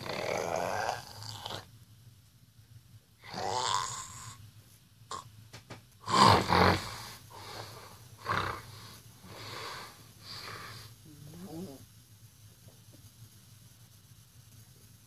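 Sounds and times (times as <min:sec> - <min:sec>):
person snoring: 0:00.0 - 0:01.7, 0:03.2 - 0:04.4, 0:06.0 - 0:11.8.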